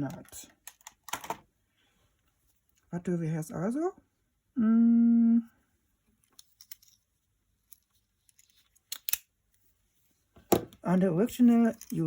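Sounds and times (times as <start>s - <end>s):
man humming: 4.6s - 5.6s.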